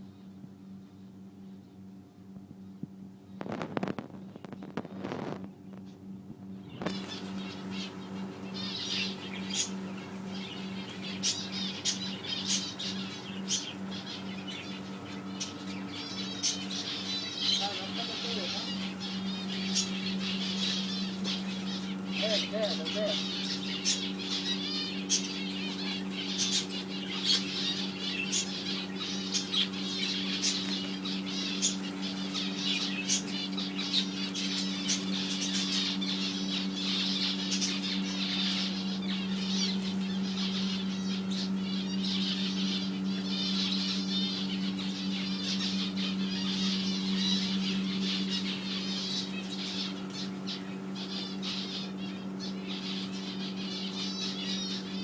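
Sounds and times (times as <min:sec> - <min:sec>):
steady low hum: 0:00.0 - 0:55.0
caged birds chirping and squawking: 0:03.2 - 0:55.0.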